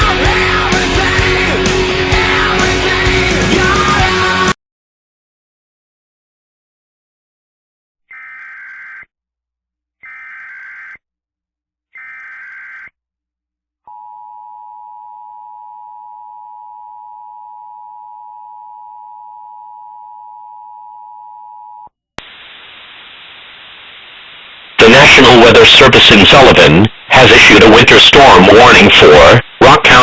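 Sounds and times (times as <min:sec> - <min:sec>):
screechy digital bursts: 0:08.1 - 0:09.1, 0:10.0 - 0:11.0, 0:12.0 - 0:12.9
two-tone alarm: 0:08.1 - 0:09.1, 0:10.0 - 0:11.0, 0:11.9 - 0:12.9, 0:13.9 - 0:21.6
static hiss: 0:22.2 - 0:30.0.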